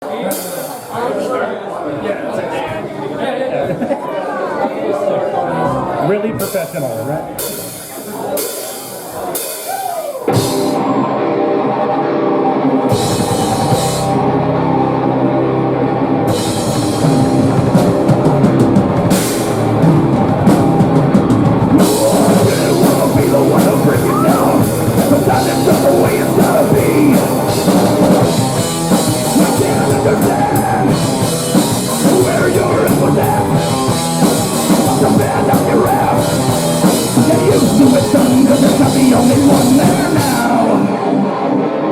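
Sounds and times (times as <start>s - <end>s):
rock band playing live: 0.0s - 1.0s, 5.7s - 41.9s
drum kit and cymbals: 0.2s - 0.9s, 6.4s - 11.0s, 16.3s - 41.0s.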